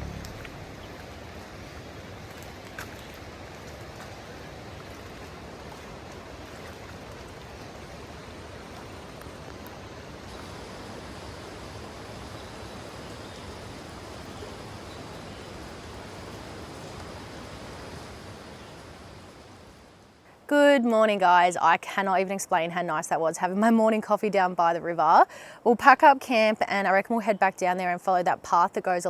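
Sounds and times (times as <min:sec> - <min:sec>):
rushing water: 0:00.0 - 0:20.3
faint drip-like ticks: 0:00.2 - 0:10.7.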